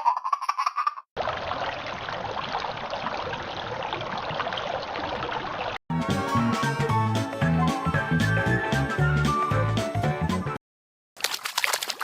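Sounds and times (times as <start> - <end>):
running water: 1.2 - 5.8.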